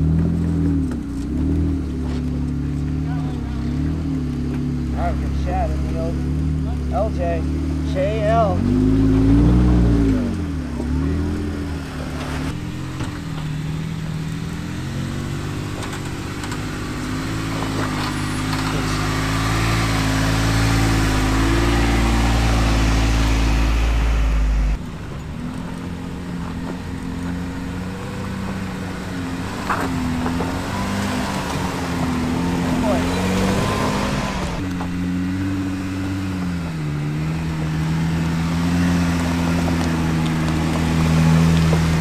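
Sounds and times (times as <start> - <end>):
engine running at low revs: 0.0 - 42.0
deep low rumble: 17.4 - 28.5.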